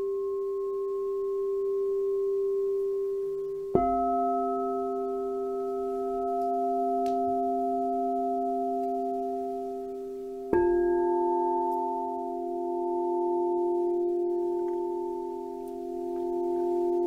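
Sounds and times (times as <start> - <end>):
singing bowl ringing: 0.0 - 17.0.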